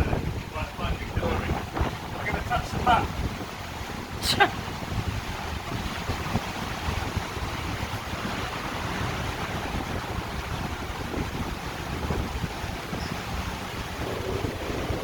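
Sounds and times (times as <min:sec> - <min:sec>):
rush of wind and sea: 0:00.0 - 0:15.0
wind buffeting microphone: 0:00.0 - 0:15.0.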